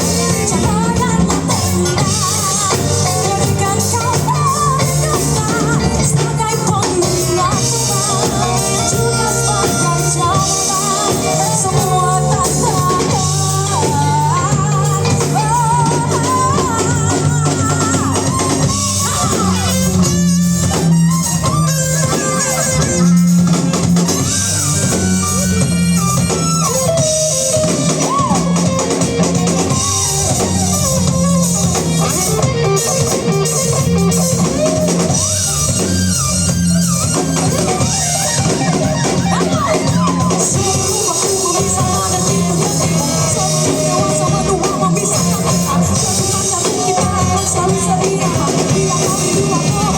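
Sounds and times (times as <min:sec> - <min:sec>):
rock band playing: 0:00.0 - 0:49.9
wavering lead melody: 0:00.0 - 0:49.9.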